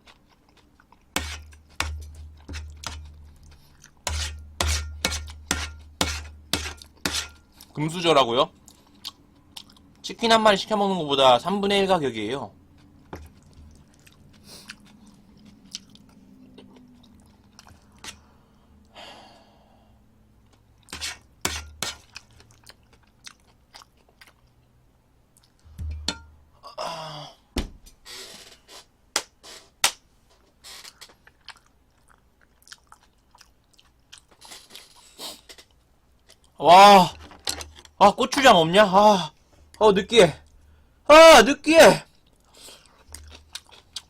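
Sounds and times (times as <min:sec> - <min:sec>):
person chewing: 0:00.0 - 0:07.8, 0:08.6 - 0:10.0, 0:12.7 - 0:18.3, 0:21.9 - 0:24.7, 0:25.4 - 0:25.6, 0:30.7 - 0:36.6, 0:42.2 - 0:44.0.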